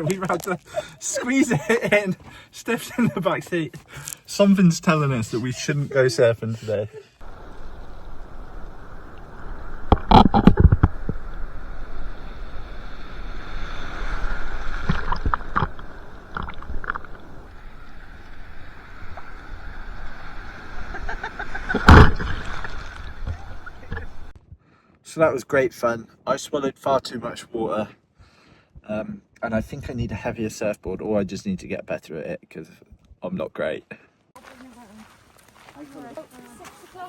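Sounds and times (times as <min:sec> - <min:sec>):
surf washing: 0:07.2 - 0:24.3
loud splashing knocks: 0:21.7 - 0:24.1.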